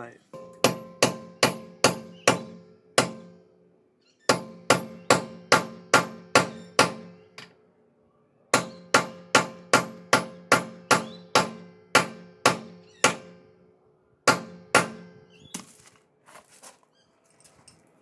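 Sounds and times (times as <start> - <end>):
hammer ringing on steel: 0.4 - 3.4, 4.3 - 7.1, 8.6 - 13.4, 14.3 - 15.1.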